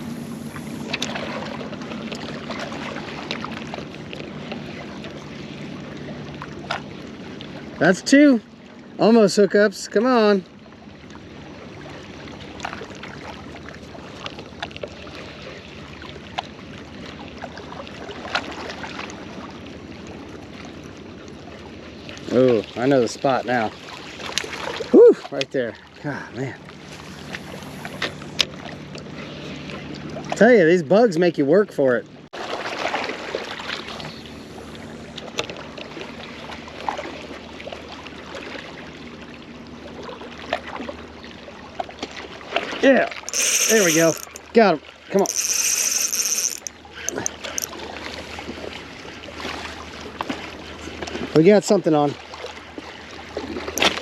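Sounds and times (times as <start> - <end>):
steady water noise: 0.0 - 54.0
wind: 0.0 - 54.0
short clicks and small splashes: 42.0 - 47.8, 53.6 - 54.0.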